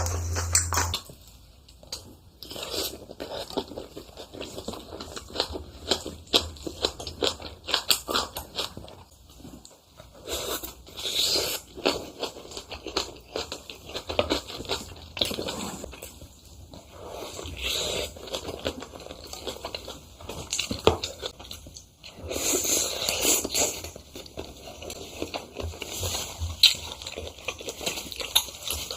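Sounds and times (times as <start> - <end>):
chewing and smacking: 1.7 - 28.9.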